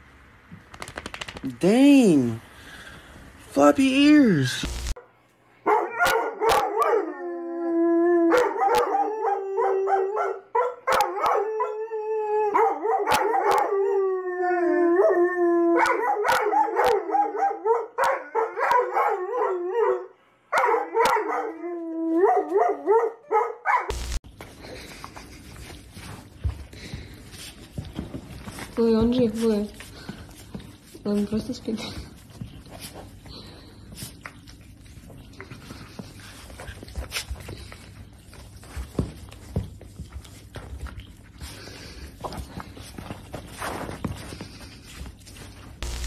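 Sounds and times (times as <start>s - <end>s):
dog howling: 5.8s - 10.4s.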